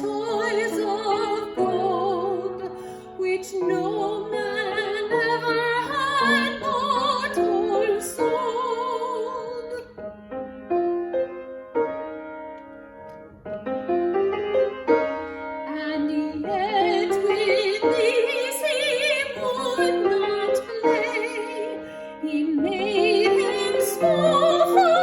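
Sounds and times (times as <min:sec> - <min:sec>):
woman singing with vibrato: 0:00.0 - 0:09.8, 0:15.7 - 0:25.0
piano: 0:00.0 - 0:25.0.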